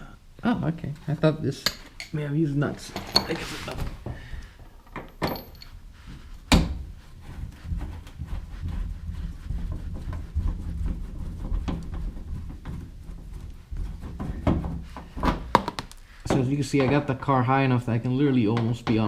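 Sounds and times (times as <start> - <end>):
shuffling and scraping: 1.8 - 15.5.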